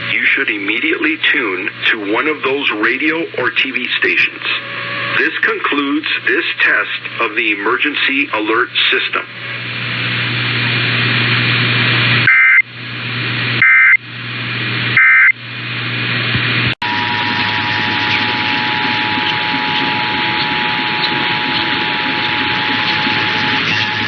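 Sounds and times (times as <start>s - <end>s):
radio hiss: 0.0s - 12.6s, 16.2s - 24.0s
two-tone attention signal: 12.3s - 12.6s, 13.6s - 14.0s, 15.0s - 15.3s, 16.8s - 24.0s
shrill digital bursts: 16.8s - 24.0s.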